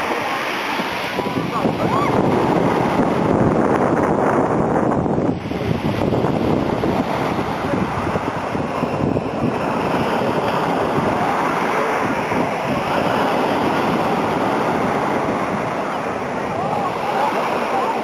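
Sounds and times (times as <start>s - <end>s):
sea surf washing in: 0.0s - 18.0s
wind buffeting microphone: 0.0s - 18.0s.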